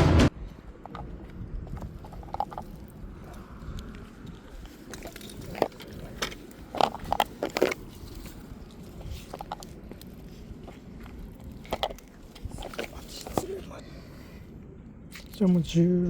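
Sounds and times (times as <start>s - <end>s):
handling clicks and knocks: 0.8s - 3.0s, 4.3s - 13.5s.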